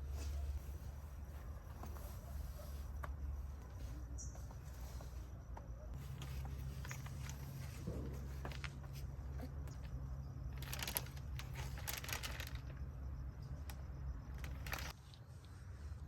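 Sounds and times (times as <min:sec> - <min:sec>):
rustling or crinkling: 0:05.9 - 0:15.6.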